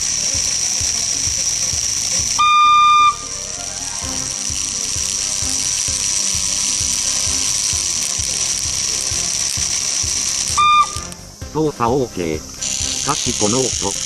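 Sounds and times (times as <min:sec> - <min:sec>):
toy train motor whining: 0:00.0 - 0:14.0
steady whistle tone: 0:02.3 - 0:04.8, 0:10.4 - 0:11.2
gearbox clicking rattle: 0:04.2 - 0:11.3.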